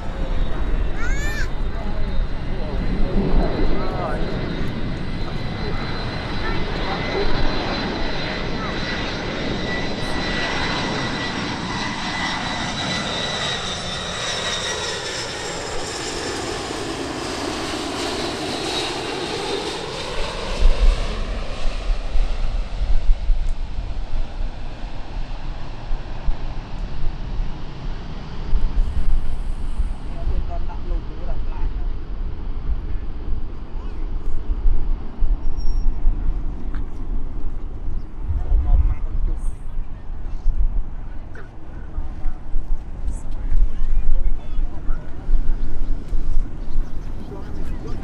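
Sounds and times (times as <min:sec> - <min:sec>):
jet airliner engine whine: 0:00.0 - 0:48.0
wind buffeting microphone: 0:15.6 - 0:30.7, 0:31.8 - 0:48.0.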